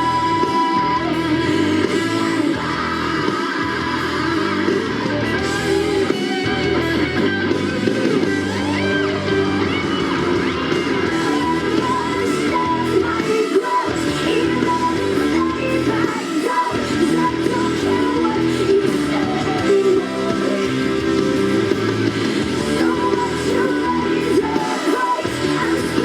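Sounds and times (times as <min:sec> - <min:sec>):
woman singing: 0:00.0 - 0:06.1, 0:11.0 - 0:21.8, 0:22.4 - 0:26.0
electric guitars: 0:00.0 - 0:26.0
hard rock song: 0:00.0 - 0:26.0.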